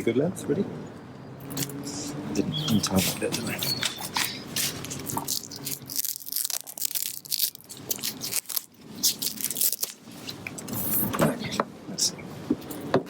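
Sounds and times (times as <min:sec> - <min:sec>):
cable strap rustling and crackling: 0:03.0 - 0:10.6.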